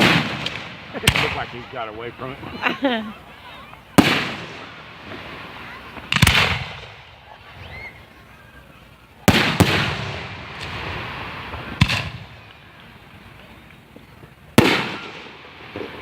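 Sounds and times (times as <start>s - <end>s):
fireworks booming: 0.0s - 16.0s.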